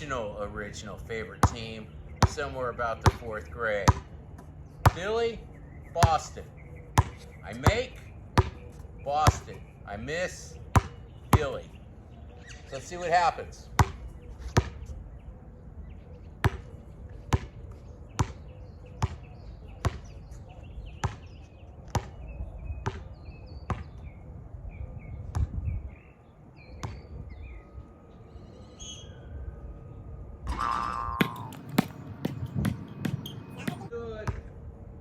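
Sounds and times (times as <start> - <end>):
basketball bouncing: 1.4 - 5.1, 6.0 - 6.4, 7.0 - 8.6, 9.2 - 9.6, 10.7 - 11.6, 13.8 - 14.8, 16.4 - 16.6, 17.3 - 17.6, 18.2 - 18.4, 31.1 - 34.5.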